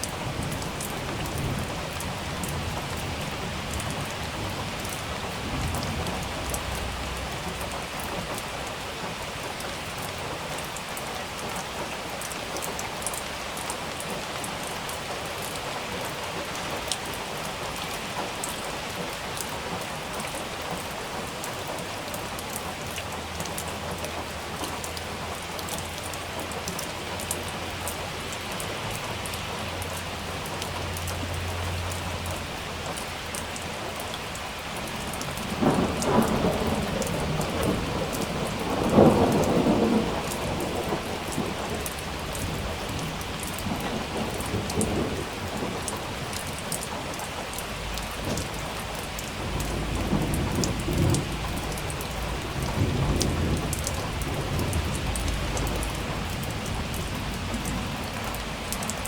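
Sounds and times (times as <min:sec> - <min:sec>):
crackling thunderclaps: 0:00.0 - 0:08.6, 0:34.9 - 0:46.6, 0:48.0 - 0:59.0
rain pattering: 0:00.0 - 0:59.0
distant thunder rumble: 0:00.1 - 0:08.9, 0:34.9 - 0:46.6, 0:48.0 - 0:59.0.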